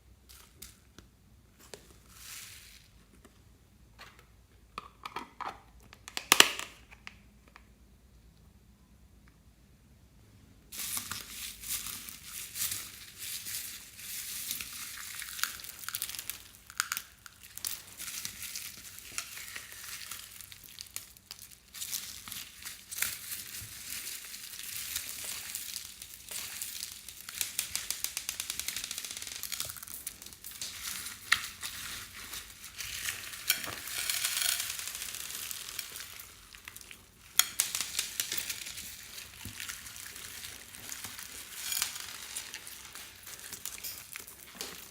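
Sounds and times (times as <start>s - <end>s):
slime squished and stirred: 10.8s - 44.9s.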